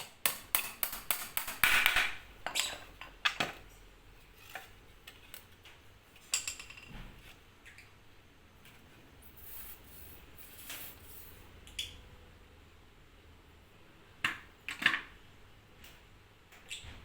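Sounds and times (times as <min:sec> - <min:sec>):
cage parts clicking and knocking: 0:00.0 - 0:03.8.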